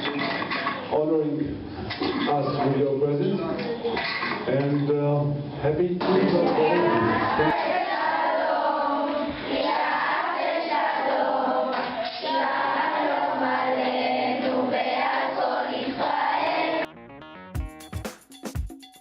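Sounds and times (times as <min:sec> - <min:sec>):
group singing in chorus: 0:06.4 - 0:16.9.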